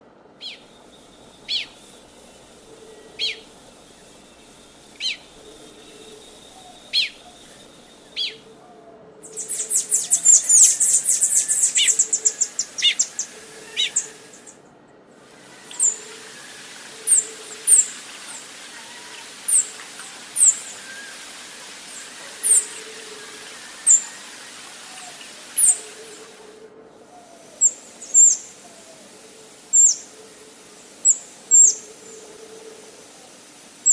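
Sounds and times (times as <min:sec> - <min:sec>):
high-pitched bird trill: 0:00.4 - 0:08.5, 0:09.2 - 0:14.6.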